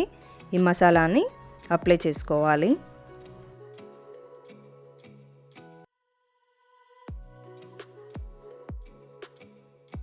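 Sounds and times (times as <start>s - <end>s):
plucked background music: 0.0s - 5.9s.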